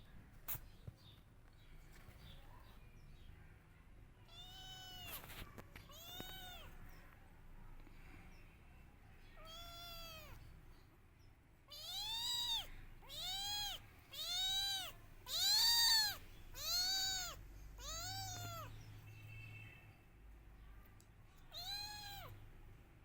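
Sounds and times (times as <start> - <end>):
kitten meowing: 4.3 - 6.8, 9.4 - 10.4, 11.7 - 18.8, 21.5 - 22.3.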